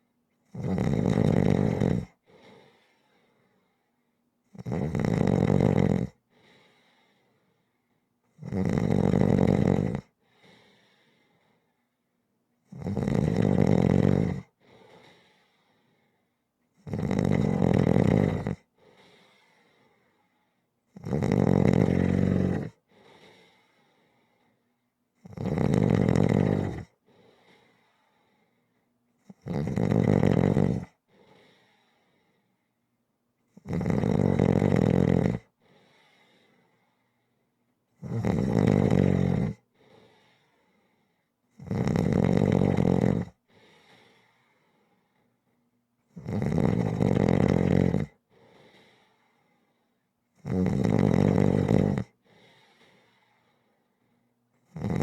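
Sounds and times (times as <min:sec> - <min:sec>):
person snoring: 0:00.5 - 0:02.8, 0:04.6 - 0:06.2, 0:08.4 - 0:10.1, 0:12.7 - 0:14.5, 0:16.8 - 0:19.4, 0:21.0 - 0:23.6, 0:25.2 - 0:27.0, 0:29.3 - 0:31.0, 0:33.6 - 0:35.5, 0:38.0 - 0:39.6, 0:41.6 - 0:43.4, 0:46.2 - 0:48.2, 0:50.4 - 0:52.8, 0:54.7 - 0:55.0.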